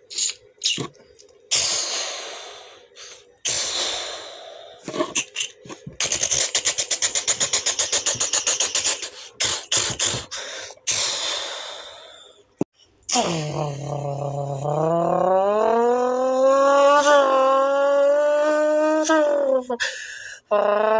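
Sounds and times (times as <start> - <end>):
person making mouth sound effects: 0.0 - 1.9, 4.8 - 11.1, 13.1 - 19.8.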